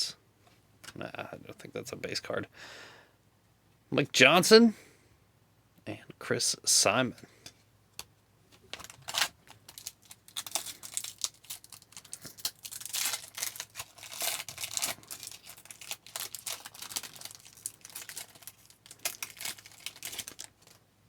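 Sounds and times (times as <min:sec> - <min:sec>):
wrapper tearing and crinkling: 0:08.7 - 0:20.8.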